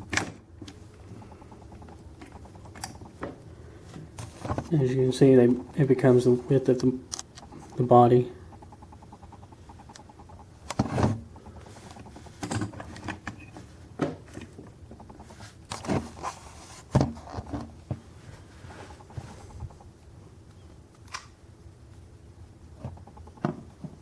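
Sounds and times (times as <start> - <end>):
knocks and clicks of model parts: 22.8 - 24.0.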